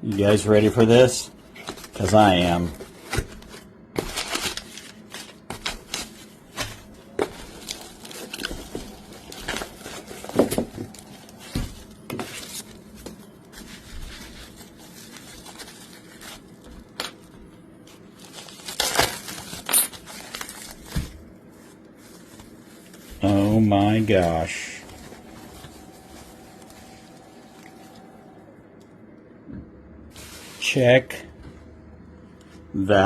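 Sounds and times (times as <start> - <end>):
packaging rustling and tearing: 0.1 - 28.3.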